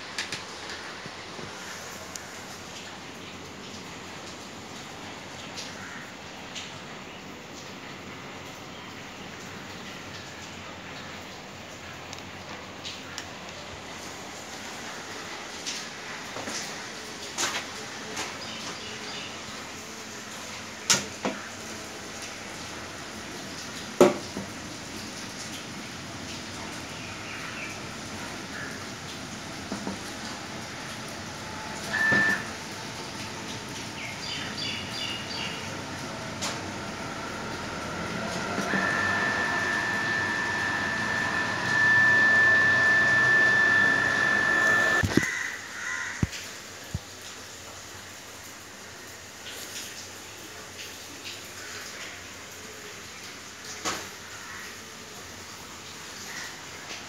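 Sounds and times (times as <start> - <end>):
high-pitched whistle over rushing hiss: 31.9 - 32.5, 37.9 - 45.1.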